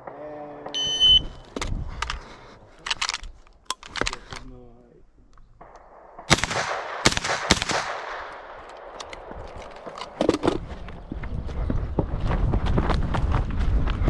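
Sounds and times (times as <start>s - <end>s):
loud pistol shots echoing: 5.6s - 8.9s.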